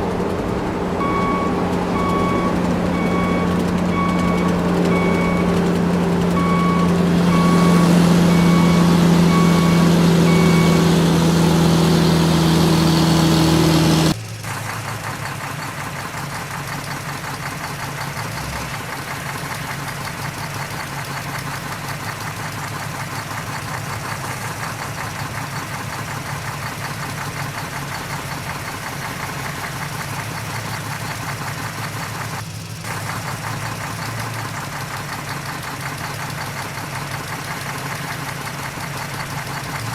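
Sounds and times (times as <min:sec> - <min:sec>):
diesel engine running: 0:00.0 - 0:39.9
heavy diesel engine idling: 0:00.0 - 0:39.9
reversing alarm beeping: 0:00.9 - 0:11.8.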